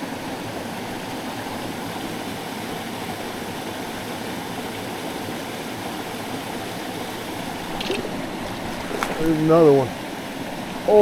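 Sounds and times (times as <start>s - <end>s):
stream water rushing: 0.0s - 11.0s.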